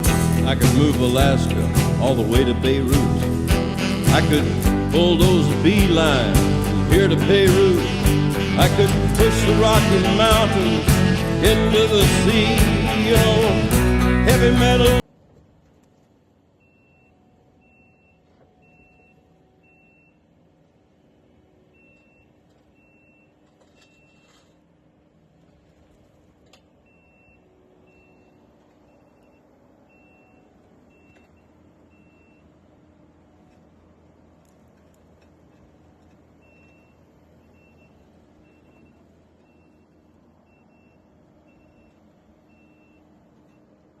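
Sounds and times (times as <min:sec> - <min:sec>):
low engine hum: 0:00.0 - 0:15.0
faint backup alarm beeping: 0:16.6 - 0:24.6, 0:26.7 - 0:33.7, 0:35.8 - 0:44.0.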